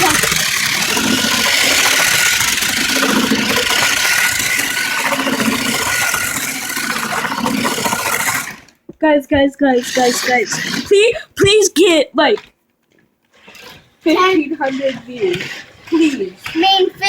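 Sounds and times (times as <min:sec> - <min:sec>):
toy car motor whine: 0:00.0 - 0:08.8, 0:09.7 - 0:11.1, 0:13.4 - 0:17.0
rattling mechanical noise: 0:00.0 - 0:08.9.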